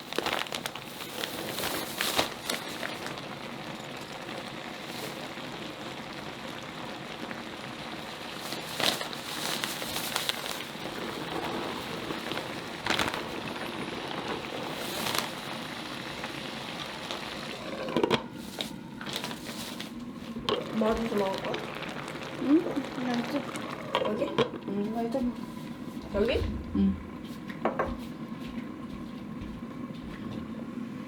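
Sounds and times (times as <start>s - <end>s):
food sizzling in a pan: 0.0s - 26.4s.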